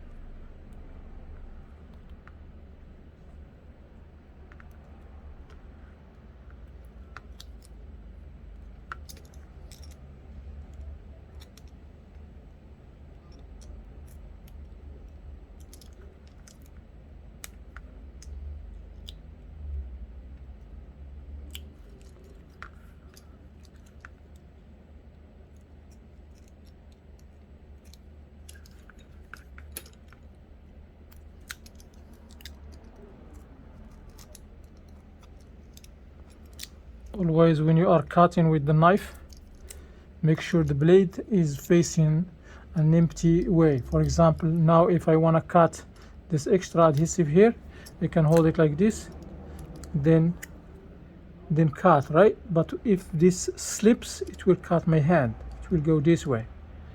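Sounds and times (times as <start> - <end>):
steady low hum: 0.0 - 56.9
small clicks and taps: 4.4 - 7.9, 25.5 - 30.4, 31.1 - 37.2.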